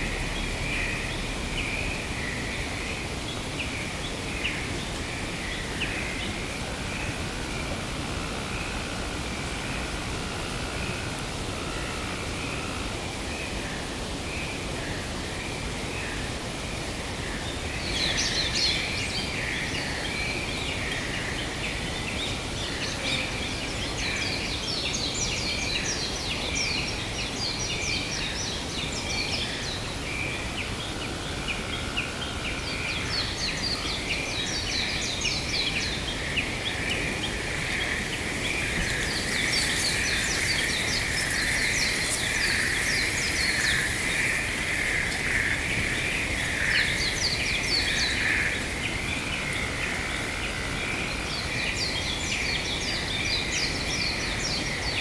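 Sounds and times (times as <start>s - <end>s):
rushing wash of noise: 0.0s - 14.2s.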